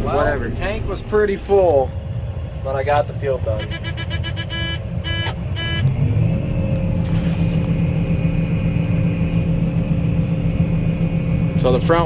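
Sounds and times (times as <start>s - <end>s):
combine engine drone: 0.0s - 12.0s
short electronic beeps: 3.6s - 5.9s.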